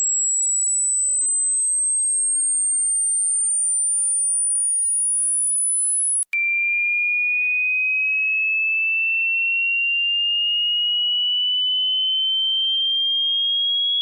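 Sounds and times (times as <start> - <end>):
high thin sine whine: 0.0 - 6.3.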